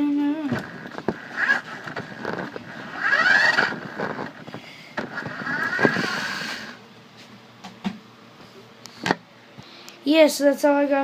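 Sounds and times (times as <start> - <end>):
toy truck motor whining: 0.5 - 4.4, 5.0 - 6.8.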